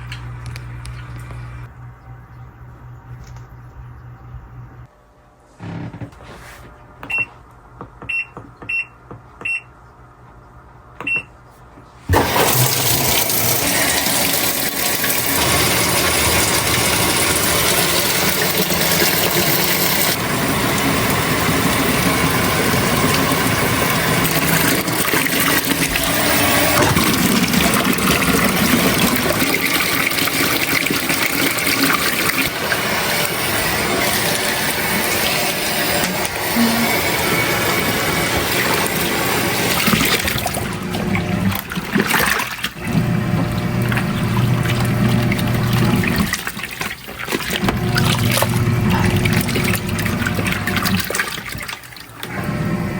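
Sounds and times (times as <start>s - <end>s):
water pumping through coffee maker: 0.0s - 4.9s, 12.1s - 52.9s
coffee maker beeping: 12.1s - 41.5s, 42.8s - 46.2s, 47.6s - 50.9s, 52.2s - 52.9s.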